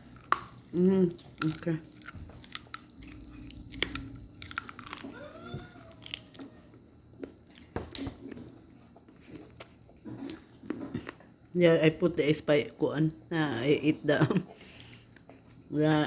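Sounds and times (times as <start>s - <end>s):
person chewing: 0.0s - 11.2s.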